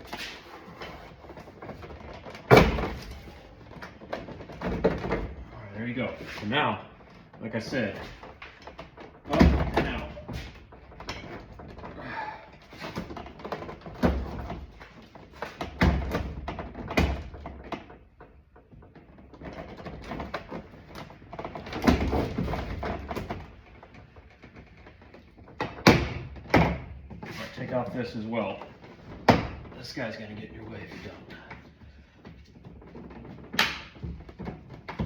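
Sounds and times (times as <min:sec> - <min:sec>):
rattling and scraping: 0:00.0 - 0:35.0
hard plastic knocks and thumps: 0:01.2 - 0:05.5, 0:12.9 - 0:27.3, 0:28.6 - 0:29.8, 0:31.7 - 0:35.0.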